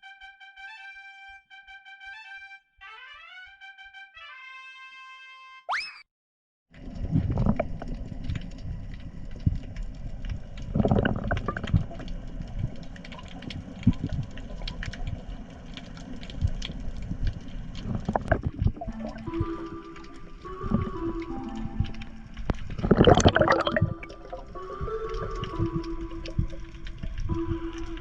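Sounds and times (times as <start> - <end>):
campfire crackling and popping: 6.8 - 28.0.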